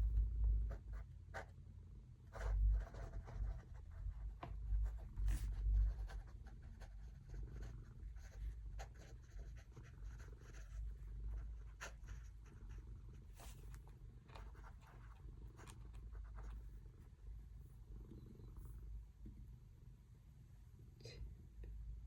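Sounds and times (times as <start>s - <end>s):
writing on paper: 2.2s - 16.8s.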